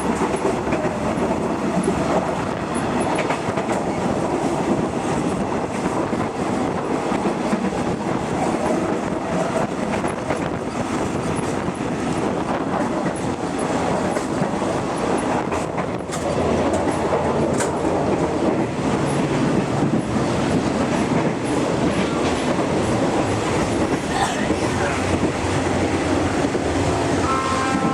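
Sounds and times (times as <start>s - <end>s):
train wheels rumbling on rails: 0.0s - 27.9s.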